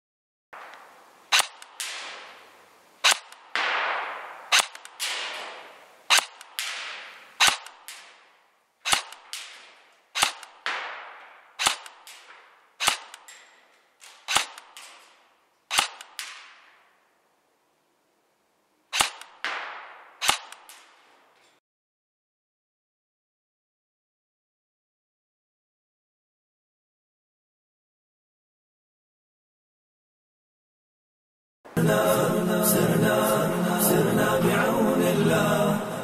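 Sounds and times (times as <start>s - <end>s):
airsoft rifle single shots: 0.6s - 16.9s, 18.9s - 21.0s.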